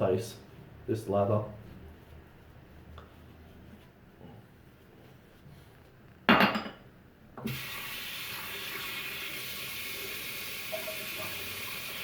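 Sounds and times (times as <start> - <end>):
tap water running into sink: 7.4 - 12.0.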